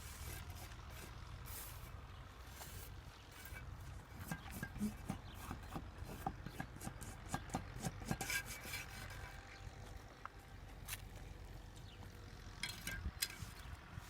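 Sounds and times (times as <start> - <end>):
scrapes and knocks on masonry: 2.5 - 9.6.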